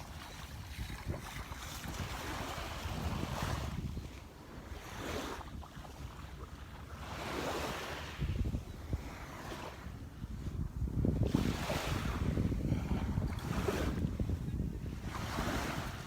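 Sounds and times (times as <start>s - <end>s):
small waves washing ashore: 0.0s - 16.0s
wind buffeting microphone: 0.0s - 16.0s.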